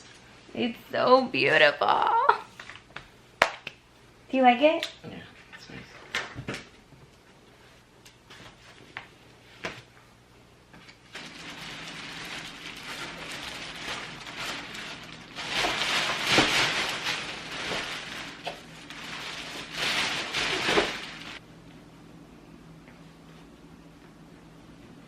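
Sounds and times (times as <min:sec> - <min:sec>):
packaging and fabric rustling: 0:11.1 - 0:21.4.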